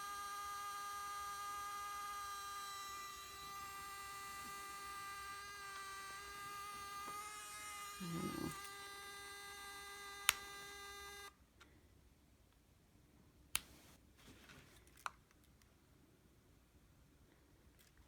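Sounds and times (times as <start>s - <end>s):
camera electronic whining buzz: 0.0s - 11.4s.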